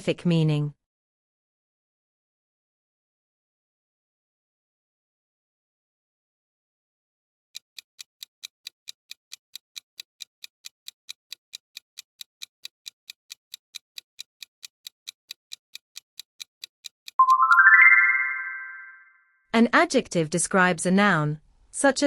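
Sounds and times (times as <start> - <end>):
countdown timer ticking: 7.6 - 19.0.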